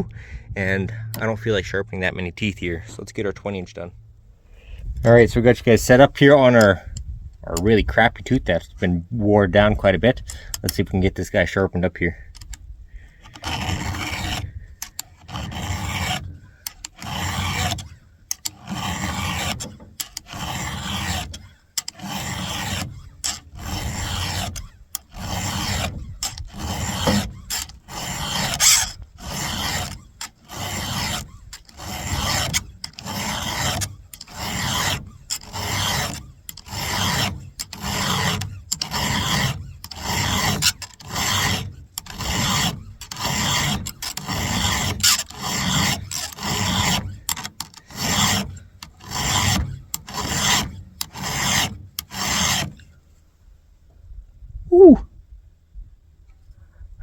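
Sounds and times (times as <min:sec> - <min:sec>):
file rasping on steel: 0:00.9 - 0:03.9, 0:12.1 - 0:52.9.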